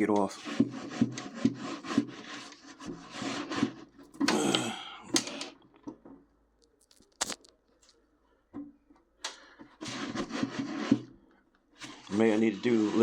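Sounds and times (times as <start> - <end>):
rubbing inside oven wall: 0.0 - 4.2, 9.6 - 13.0.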